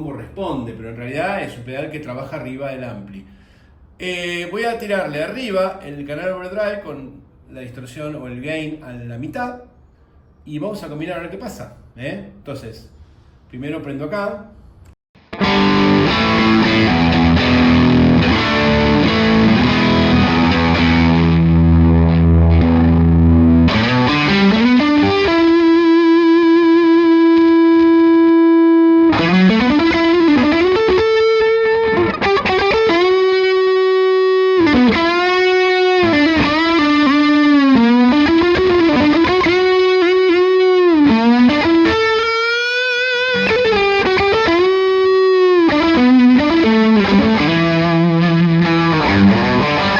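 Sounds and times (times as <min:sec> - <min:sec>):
distorted electric guitar: 0:15.2 - 0:49.9.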